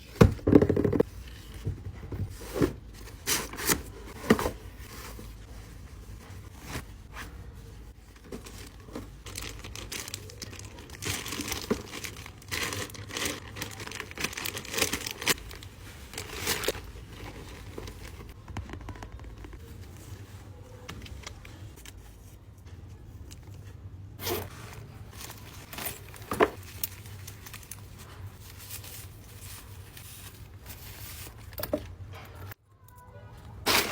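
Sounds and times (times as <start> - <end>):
packaging crinkling and tearing: 8.1 - 19.6.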